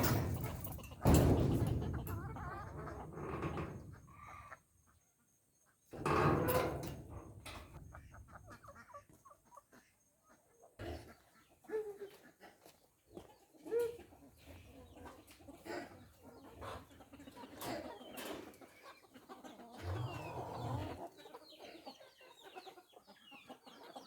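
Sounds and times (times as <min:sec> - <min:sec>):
knocks and clicks: 0:00.0 - 0:04.0
chickens clucking: 0:00.0 - 0:24.0.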